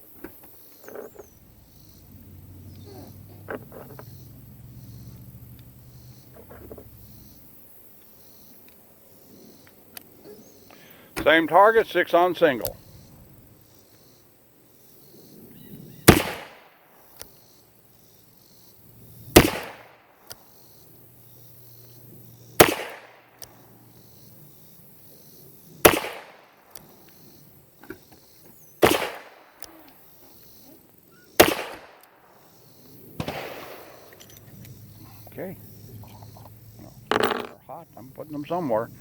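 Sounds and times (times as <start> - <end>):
revolver gunshots with echo: 16.0 - 16.9, 19.3 - 20.2, 22.6 - 23.5, 25.8 - 26.7, 28.8 - 29.6, 31.4 - 32.5, 33.2 - 34.2.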